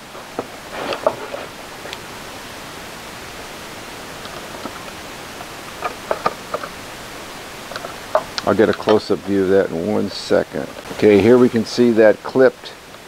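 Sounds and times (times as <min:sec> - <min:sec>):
steady hiss: 0:00.0 - 0:13.0
small parts clicking and rustling: 0:04.2 - 0:06.8, 0:07.6 - 0:09.4.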